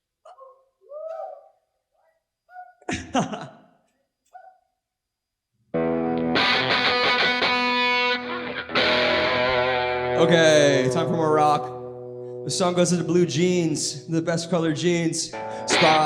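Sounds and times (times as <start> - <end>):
distorted electric guitar: 5.8 - 13.2, 15.3 - 16.0.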